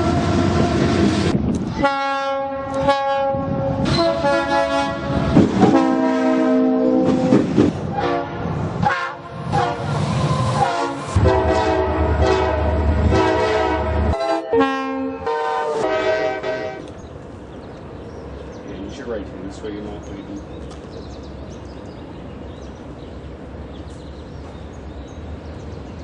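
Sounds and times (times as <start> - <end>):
train rumble: 0.0 - 26.0
locomotive air horn blasts: 1.8 - 16.9.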